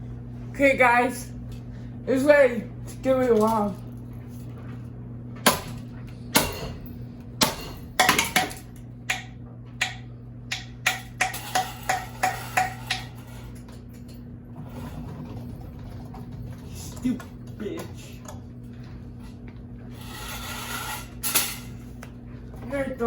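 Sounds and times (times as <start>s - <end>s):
steady low hum: 0.0s - 23.0s
knocks and bangs on hard objects: 7.4s - 13.1s.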